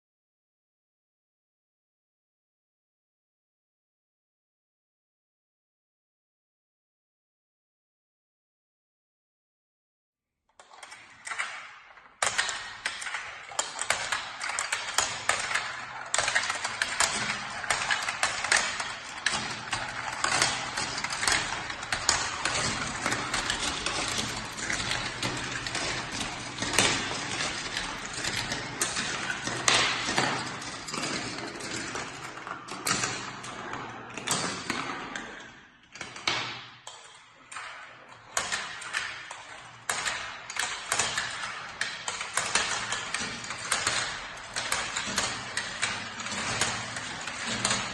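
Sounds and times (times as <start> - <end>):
marbles rattling down plastic track: 10.6 - 35.5, 37.5 - 47.9.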